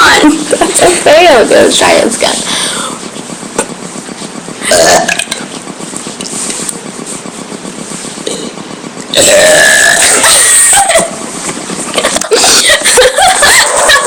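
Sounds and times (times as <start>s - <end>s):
person burping loudly: 4.6s - 5.3s, 8.2s - 11.0s.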